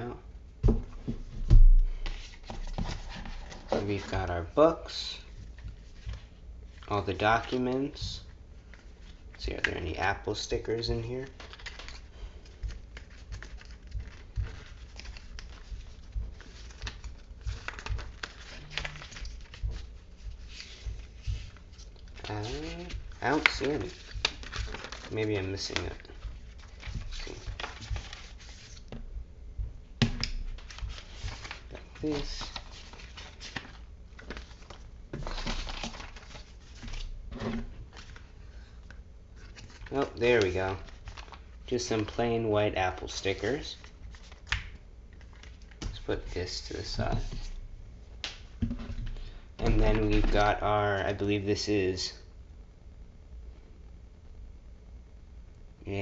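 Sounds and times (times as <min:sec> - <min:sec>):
paper and card rustling: 0:00.7 - 0:29.0, 0:30.0 - 0:47.6, 0:48.2 - 0:51.1.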